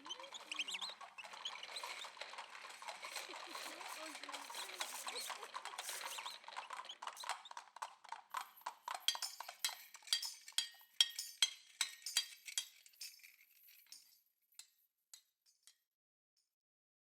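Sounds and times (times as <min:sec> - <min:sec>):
metallic clinks and knocks: 0:04.3 - 0:14.2.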